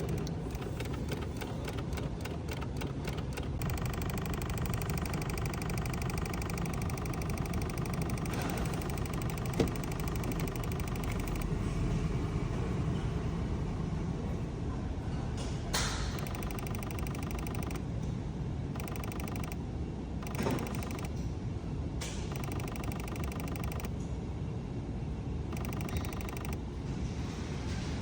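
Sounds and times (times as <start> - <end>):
starter solenoid rapid clicking: 0.0 - 11.5, 15.9 - 17.8, 18.8 - 19.6, 20.2 - 21.1, 22.3 - 23.9, 25.5 - 26.6.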